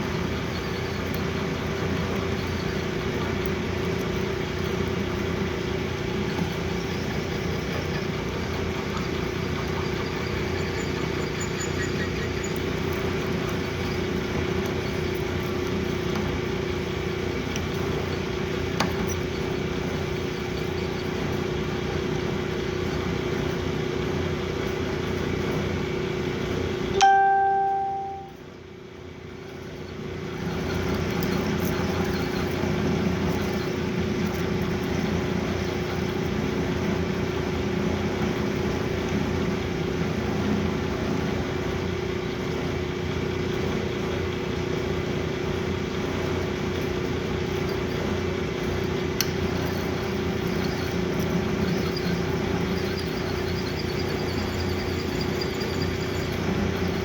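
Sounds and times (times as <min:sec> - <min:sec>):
sharp metallic ring: 0:27.0 - 0:28.4
metal lathe humming: 0:47.2 - 0:57.0.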